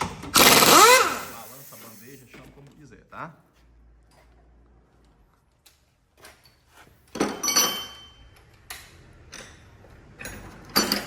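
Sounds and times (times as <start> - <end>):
metal tools clanking and rattling: 6.2 - 11.0.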